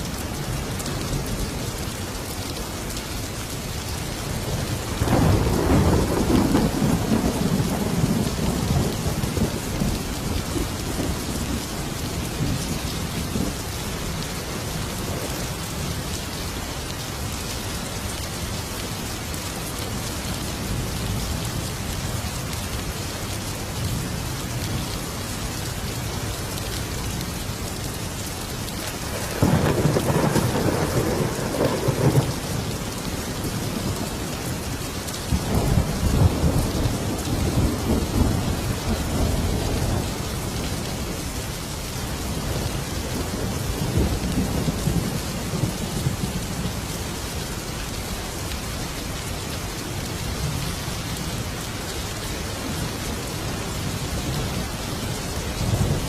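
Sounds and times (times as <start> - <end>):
steady rain falling: 0.0 - 56.0
rolling thunder: 4.4 - 13.7, 29.0 - 34.4.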